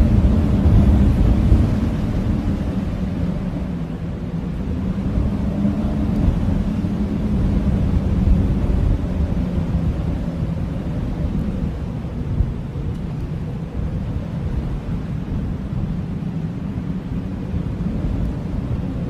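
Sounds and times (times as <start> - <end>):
blizzard wind howling: 0.0 - 19.0.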